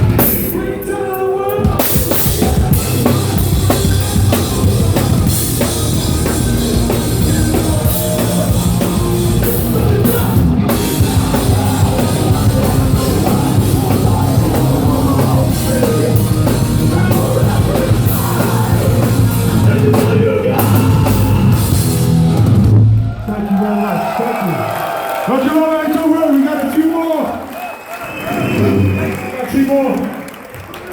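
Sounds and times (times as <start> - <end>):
hardcore band playing live: 0.0 - 23.7
pounding drum kit: 0.0 - 25.0.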